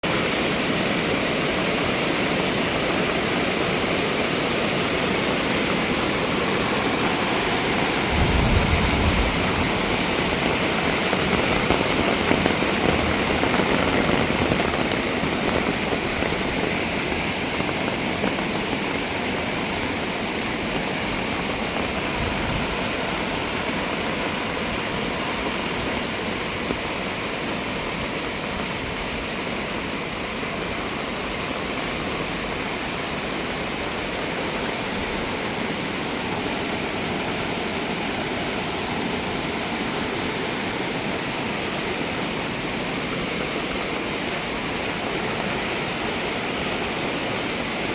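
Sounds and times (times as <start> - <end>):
stream rushing water: 0.0 - 47.9
low rumble: 8.1 - 10.1.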